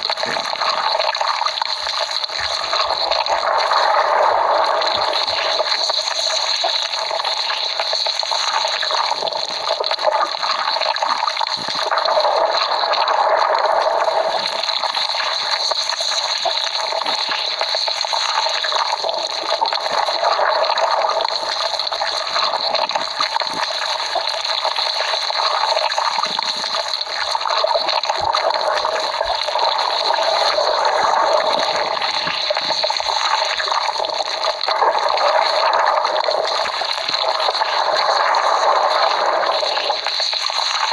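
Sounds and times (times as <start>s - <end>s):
cartoon stomach growling: 0.0s - 7.2s.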